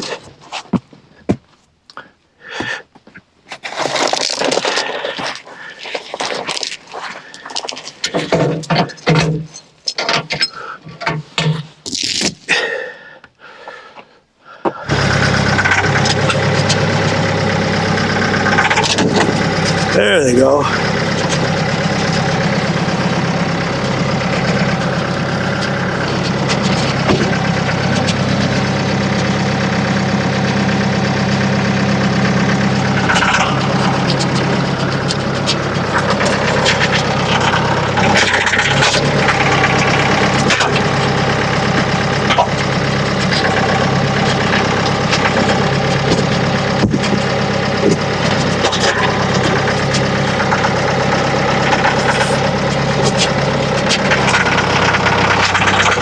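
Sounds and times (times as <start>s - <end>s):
engine running steadily: 2.0s - 12.3s, 14.7s - 56.0s
sharp knocks and thuds: 26.5s - 28.2s, 45.2s - 48.4s.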